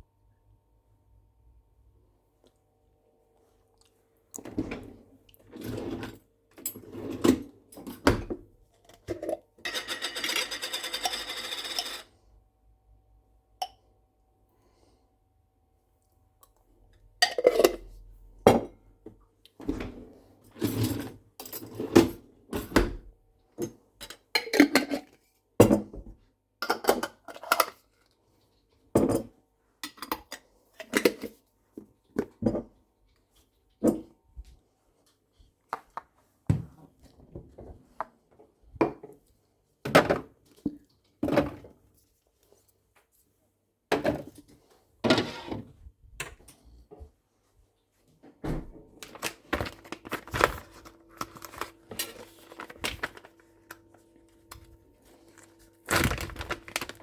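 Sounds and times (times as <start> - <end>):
dishes and utensils clinking: 9.1 - 12.1.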